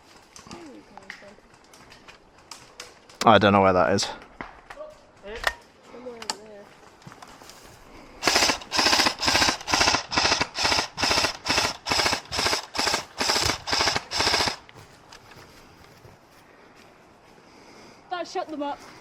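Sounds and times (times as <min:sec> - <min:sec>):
airsoft rifle automatic bursts: 0:08.2 - 0:14.7.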